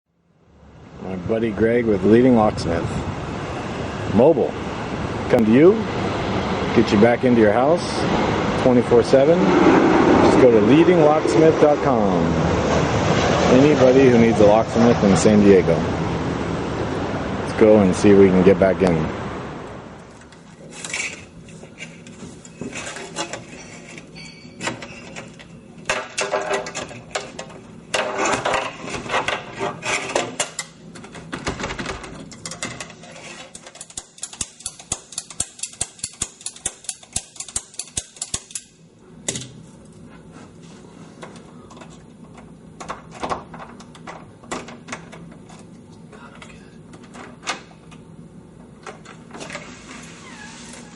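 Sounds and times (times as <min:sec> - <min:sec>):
metal tools clicking in lock: 0:33.5 - 0:38.7.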